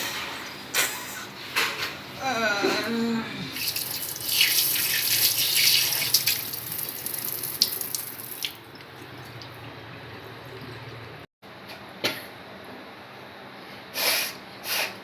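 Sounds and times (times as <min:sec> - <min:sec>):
tap water running into basin: 0:03.6 - 0:11.2.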